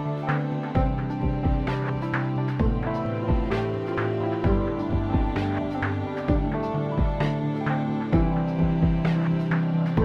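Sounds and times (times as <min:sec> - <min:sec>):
background music with steady beat: 0:00.0 - 0:10.0.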